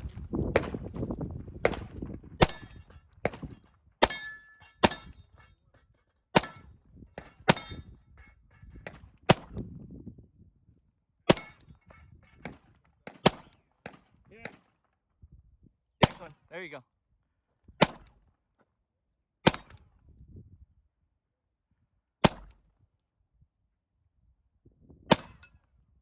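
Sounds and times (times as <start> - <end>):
pistol shots: 0.5 - 0.9, 1.6 - 5.2, 16.0 - 16.3
steel targets ringing: 4.0 - 5.6, 6.4 - 8.7, 11.3 - 12.0.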